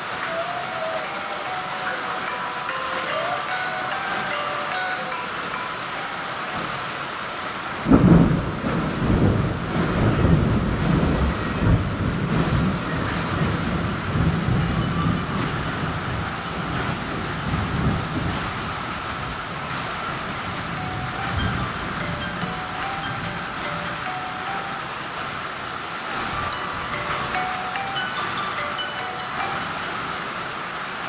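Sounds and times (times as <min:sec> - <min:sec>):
heavy rain falling: 0:00.0 - 0:31.0
thunderclap rolling rumble: 0:07.8 - 0:23.6.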